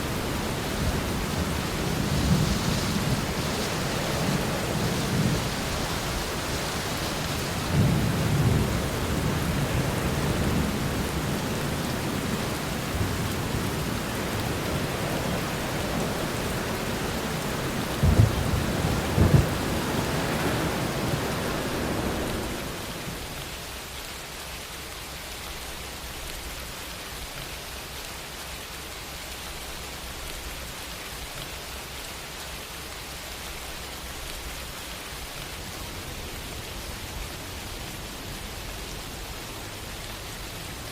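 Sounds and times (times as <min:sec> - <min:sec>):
thunder rumbling: 0:00.0 - 0:23.5
heavy rain: 0:00.0 - 0:40.9
thunder crack: 0:00.6 - 0:23.4.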